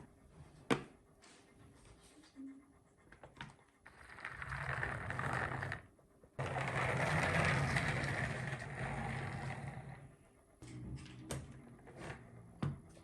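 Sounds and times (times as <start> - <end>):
marbles rattling down wooden track: 4.0 - 5.8.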